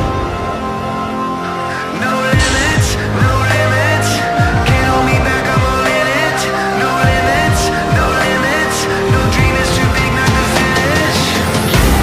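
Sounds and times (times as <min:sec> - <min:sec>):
electronic music with kick drums: 0:02.3 - 0:06.3, 0:06.9 - 0:12.0.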